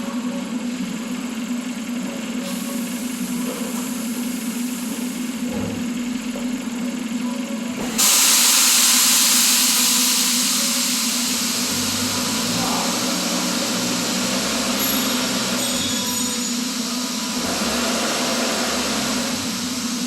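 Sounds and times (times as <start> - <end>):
loud rushing hiss: 8.0 - 15.6.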